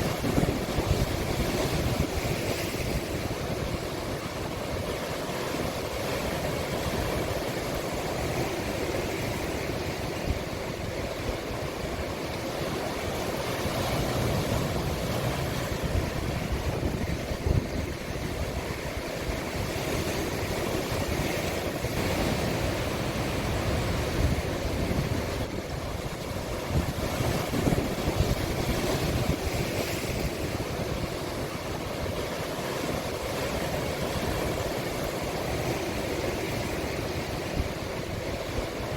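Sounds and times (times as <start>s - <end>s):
wind buffeting microphone: 0.0s - 5.0s, 13.7s - 38.9s
sea waves breaking on shore: 0.0s - 38.9s.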